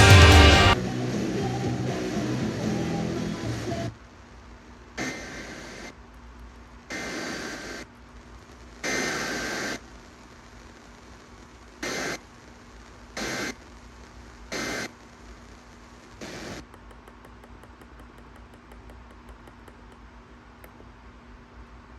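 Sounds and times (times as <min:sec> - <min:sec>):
radio static hiss: 0:01.4 - 0:17.4
screeching data bursts: 0:08.9 - 0:09.8.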